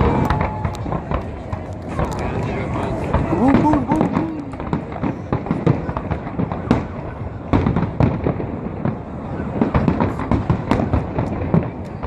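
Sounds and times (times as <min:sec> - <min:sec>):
fireworks booming and crackling: 0:00.0 - 0:12.0.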